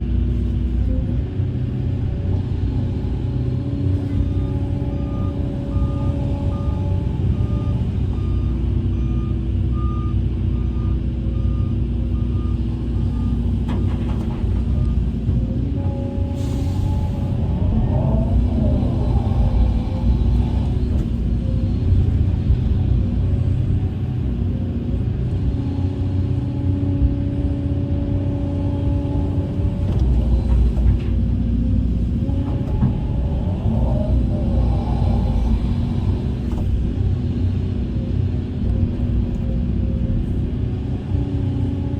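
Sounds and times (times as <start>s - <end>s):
diesel engine rumble: 0.0s - 41.9s
reversing alarm beeping: 4.0s - 13.6s.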